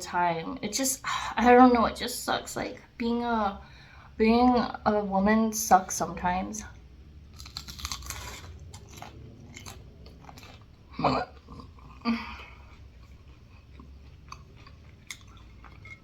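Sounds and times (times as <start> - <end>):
person chewing food: 7.3 - 16.0
mouth or throat sounds: 10.9 - 14.6.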